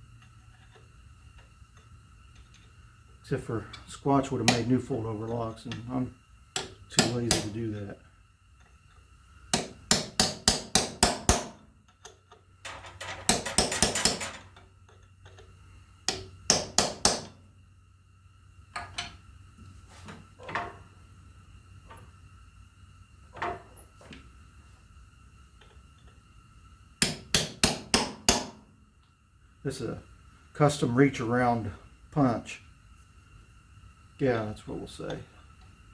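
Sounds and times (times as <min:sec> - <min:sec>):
hammer striking metal punch: 0:09.6 - 0:11.6, 0:16.1 - 0:17.3, 0:27.0 - 0:28.6.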